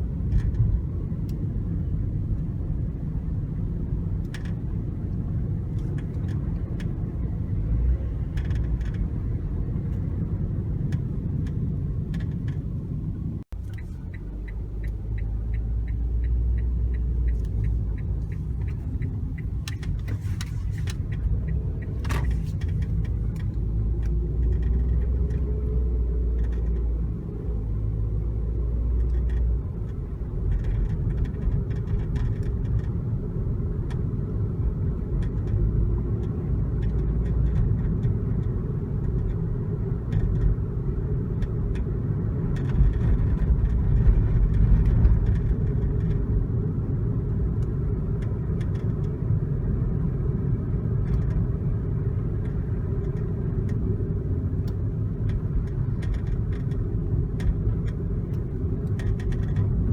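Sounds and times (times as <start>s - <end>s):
car low rumble: 0.0s - 59.9s
light ticks and rattles: 8.3s - 9.1s, 13.6s - 27.0s, 28.8s - 33.1s, 34.8s - 46.4s, 50.8s - 59.9s.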